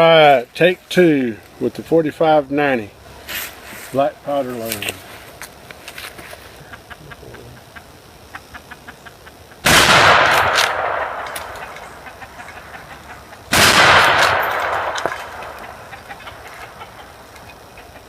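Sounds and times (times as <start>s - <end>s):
rifle shots with long echo: 9.6s - 11.8s, 13.5s - 15.9s.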